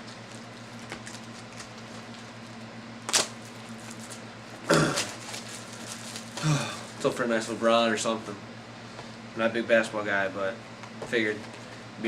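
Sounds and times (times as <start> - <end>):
steady low hum: 0.0 - 12.0
card box clicks and rustles: 5.0 - 6.4.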